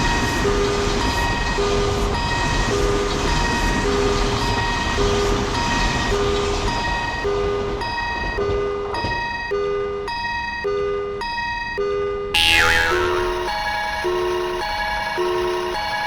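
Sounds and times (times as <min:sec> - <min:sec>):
train running: 0:00.0 - 0:09.6.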